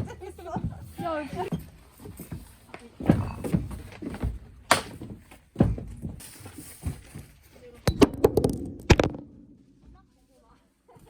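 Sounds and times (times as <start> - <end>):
irregular knocks and thumps: 0.0 - 6.2, 7.9 - 10.1.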